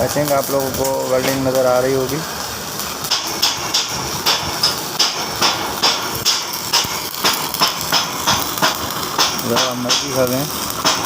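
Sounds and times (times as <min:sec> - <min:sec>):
metal being hammered: 0:03.0 - 0:11.0.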